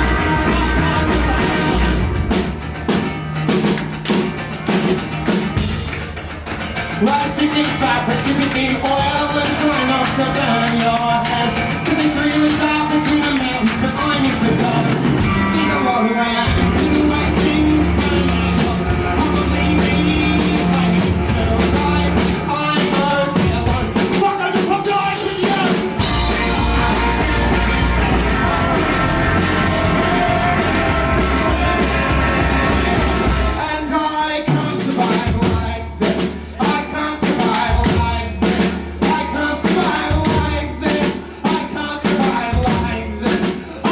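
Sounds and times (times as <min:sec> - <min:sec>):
live rock band playing: 0:00.0 - 0:43.9.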